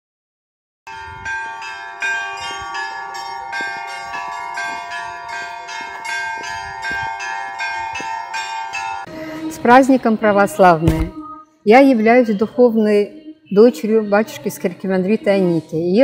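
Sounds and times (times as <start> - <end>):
small bells struck quickly: 0.9 - 9.1
large bells ringing: 0.9 - 10.6.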